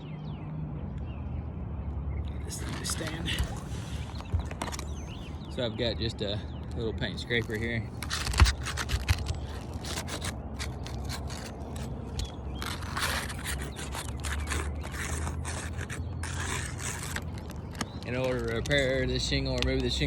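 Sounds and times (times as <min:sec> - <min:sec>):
metal scraper scraping shingles: 0:02.5 - 0:05.0, 0:07.2 - 0:20.0.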